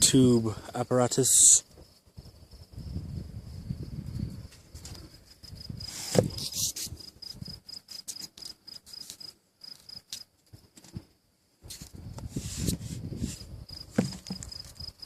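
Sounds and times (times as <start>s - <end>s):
cricket chirping: 0.0s - 15.0s
loud thump: 13.9s - 14.4s.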